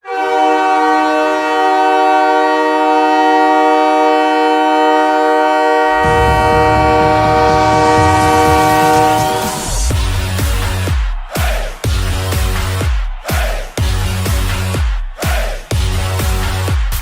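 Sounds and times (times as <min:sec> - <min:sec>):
goal horn blast: 0:00.0 - 0:11.2
low music beat: 0:05.9 - 0:17.0.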